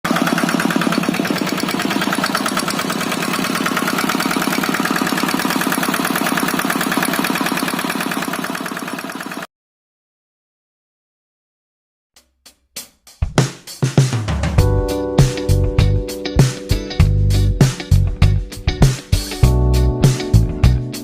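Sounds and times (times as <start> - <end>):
diesel engine running: 0.1 - 9.5, 16.7 - 20.8.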